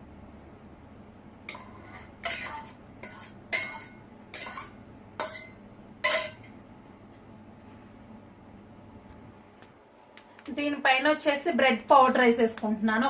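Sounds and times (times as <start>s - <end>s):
utensil scraping a bowl: 1.5s - 5.5s.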